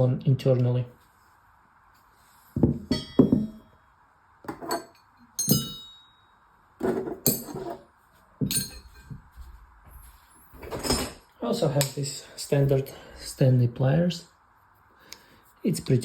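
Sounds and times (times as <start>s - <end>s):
steel tools clinking: 4.6s - 6.2s, 7.2s - 7.8s, 8.5s - 9.2s.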